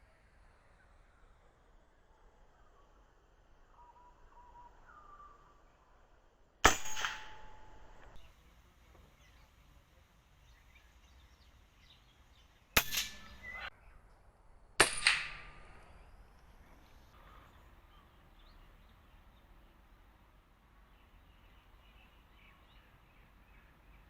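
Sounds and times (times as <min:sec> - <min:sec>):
air rifle shots: 0:06.6 - 0:08.2, 0:12.8 - 0:13.7, 0:14.8 - 0:16.1
birds chirping faintly: 0:08.1 - 0:14.4, 0:15.5 - 0:24.0.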